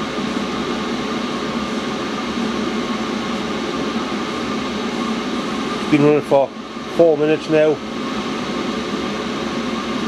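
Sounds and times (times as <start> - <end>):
air heater rushing hum: 0.0 - 10.0.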